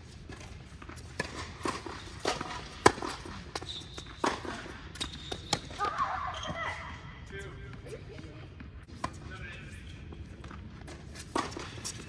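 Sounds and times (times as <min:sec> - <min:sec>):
shoe squeaks: 0:03.1 - 0:07.0.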